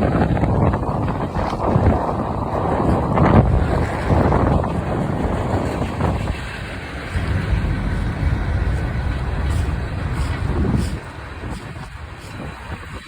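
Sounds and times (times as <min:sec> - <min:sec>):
freight train wheels rumbling: 0:00.0 - 0:13.0
wind buffeting microphone: 0:00.0 - 0:13.0.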